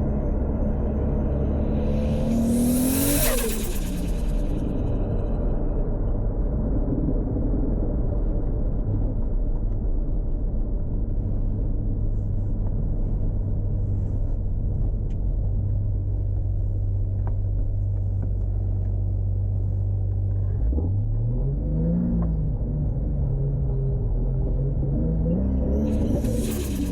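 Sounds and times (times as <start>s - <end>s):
car engine running: 0.0s - 5.3s, 22.1s - 26.9s.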